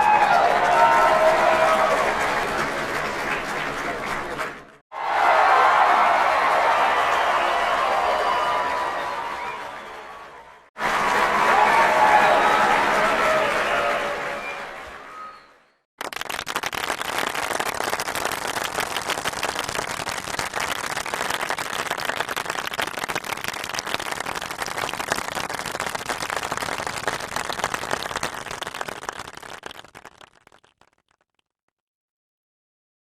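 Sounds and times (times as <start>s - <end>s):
crowd applauding: 0.0s - 31.2s.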